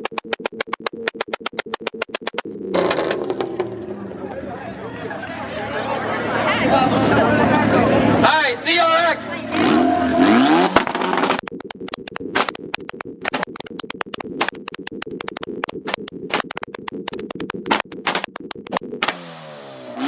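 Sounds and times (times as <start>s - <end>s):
exhaust cracking and popping: 0.0s - 4.4s, 10.4s - 19.3s
car engine revving: 0.2s - 8.3s, 9.2s - 20.0s.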